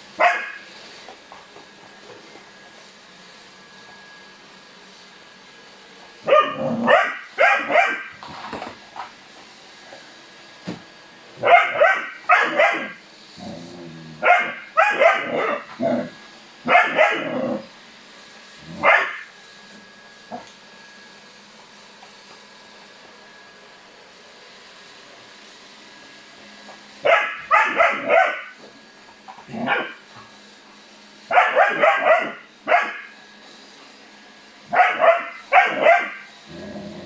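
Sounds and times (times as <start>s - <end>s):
dog barking: 0.2s - 0.6s, 6.3s - 8.1s, 11.4s - 13.0s, 14.2s - 16.1s, 16.7s - 17.6s, 18.8s - 19.3s, 27.0s - 28.5s, 29.6s - 30.0s, 31.3s - 33.1s, 34.7s - 36.3s.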